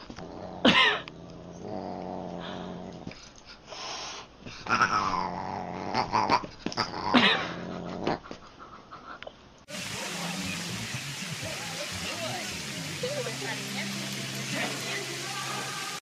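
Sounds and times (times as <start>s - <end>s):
pet animal growling: 0.0s - 3.2s, 4.6s - 8.3s.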